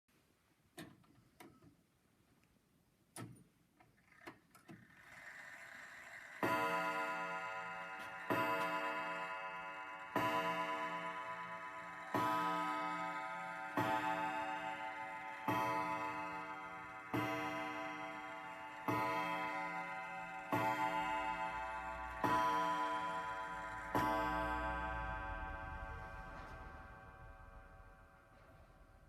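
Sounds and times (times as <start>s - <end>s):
wall clock striking: 6.2s - 29.0s.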